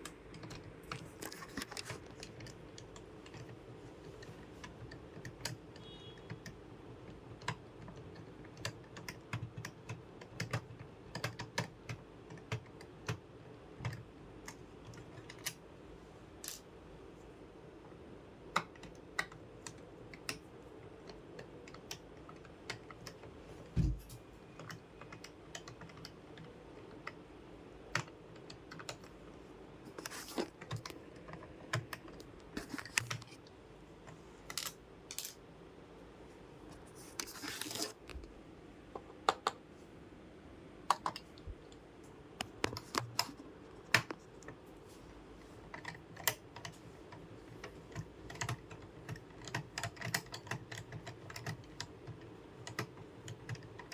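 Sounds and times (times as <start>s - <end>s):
hard plastic clicks and taps: 39.0s - 39.6s, 40.9s - 41.4s.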